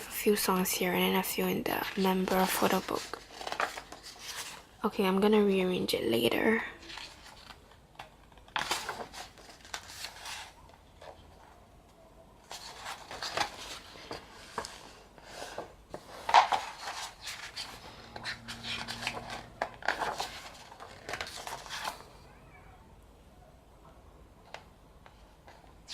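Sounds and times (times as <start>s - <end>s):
paper pages rustling: 1.8s - 4.7s, 6.8s - 11.5s, 12.4s - 22.2s.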